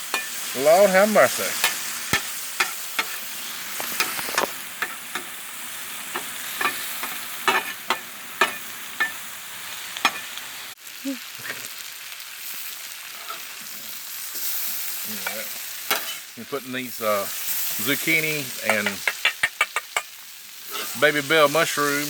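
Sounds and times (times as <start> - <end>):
vegetables sizzling on a griddle: 0.0 - 22.0
metal spatula clacking on steel: 18.7 - 20.1.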